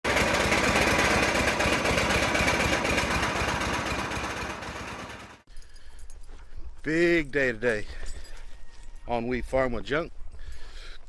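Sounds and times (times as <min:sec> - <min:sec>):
engine running: 0:00.0 - 0:05.5.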